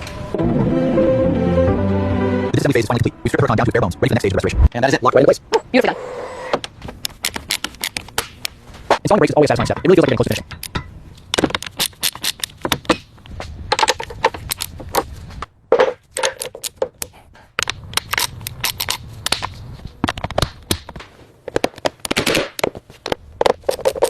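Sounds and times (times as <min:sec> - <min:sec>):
metallic clicks and clanks of tools: 0:07.0 - 0:08.6, 0:09.5 - 0:13.0, 0:16.0 - 0:20.4.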